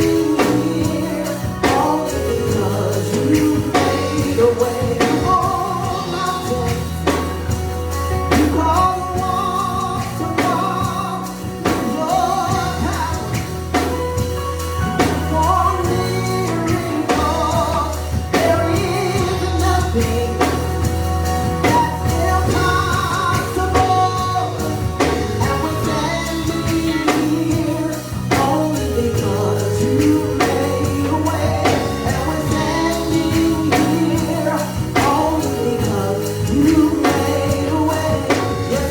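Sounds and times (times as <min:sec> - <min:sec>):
band with bass and drums: 0:00.0 - 0:38.9
voices singing worship song: 0:00.0 - 0:38.9.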